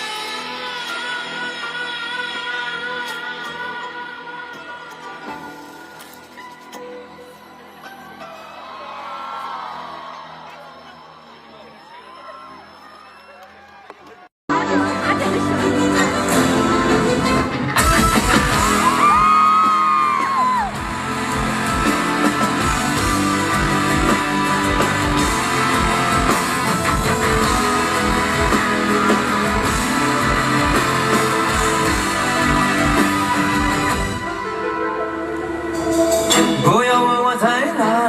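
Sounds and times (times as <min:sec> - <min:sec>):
electric guitar: 0:14.6 - 0:36.7.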